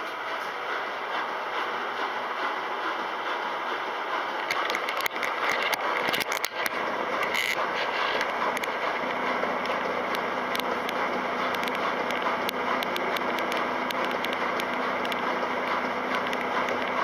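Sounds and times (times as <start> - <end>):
washing machine churning: 0.0 - 17.0
sharp clicks and scrapes: 4.4 - 17.0.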